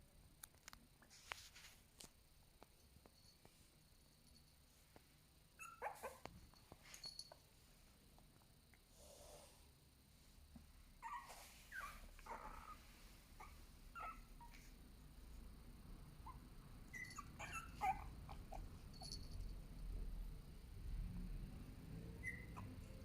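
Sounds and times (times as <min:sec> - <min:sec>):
puppy squeaking and whimpering: 0:05.6 - 0:06.3, 0:11.0 - 0:12.8, 0:13.4 - 0:14.6, 0:16.2 - 0:19.0, 0:22.2 - 0:23.0.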